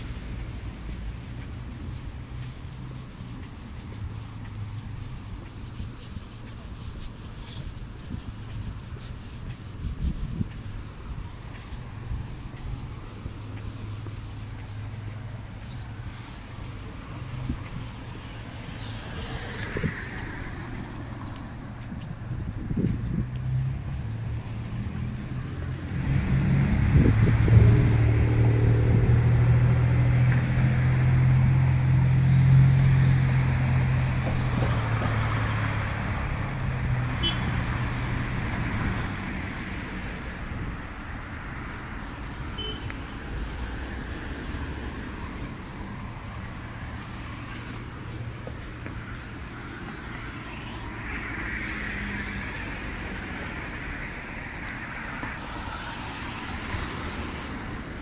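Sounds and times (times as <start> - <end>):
low rumble of traffic: 0.0 - 58.0
vehicle engine humming: 0.0 - 58.0.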